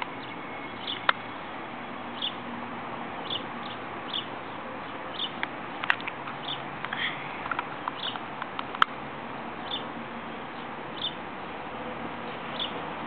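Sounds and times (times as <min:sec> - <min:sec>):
outdoor background hiss: 0:00.0 - 0:13.0
sharp clicks: 0:00.9 - 0:01.2, 0:05.3 - 0:09.0.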